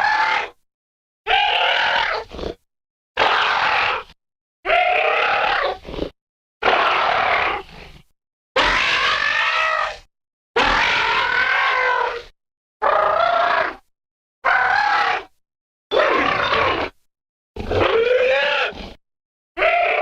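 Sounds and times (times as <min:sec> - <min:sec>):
dinosaur calls: 0:01.3 - 0:02.6, 0:04.7 - 0:05.9, 0:10.6 - 0:17.0, 0:17.6 - 0:19.0, 0:19.6 - 0:20.0.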